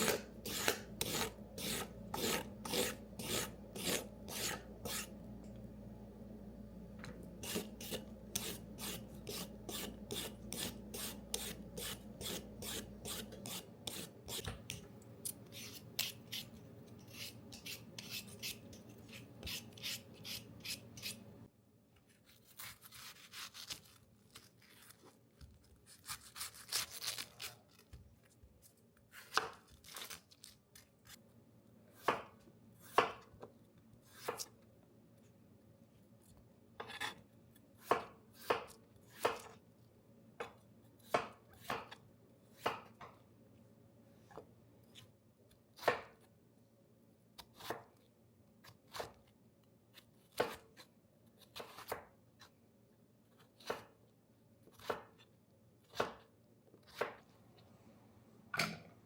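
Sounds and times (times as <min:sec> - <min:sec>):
knife chopping on cutting board: 0:00.0 - 0:05.1, 0:07.4 - 0:14.8, 0:32.0 - 0:33.4, 0:34.1 - 0:34.5, 0:37.8 - 0:39.6, 0:40.4 - 0:42.0, 0:42.6 - 0:43.1, 0:47.4 - 0:47.9, 0:50.3 - 0:50.8, 0:51.5 - 0:52.1, 0:53.6 - 0:54.0, 0:54.7 - 0:55.2, 0:55.9 - 0:57.2.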